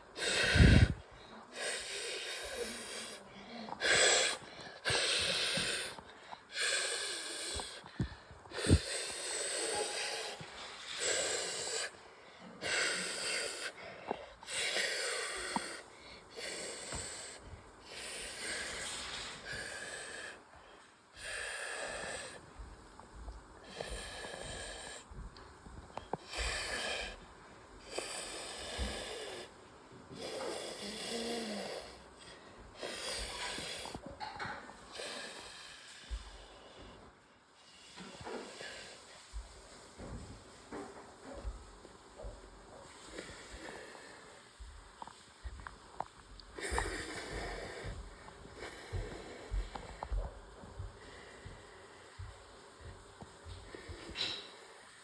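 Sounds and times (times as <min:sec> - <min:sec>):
wheezing snore-like breaths: 0:00.0 - 0:20.5, 0:21.1 - 0:22.5, 0:26.2 - 0:34.0.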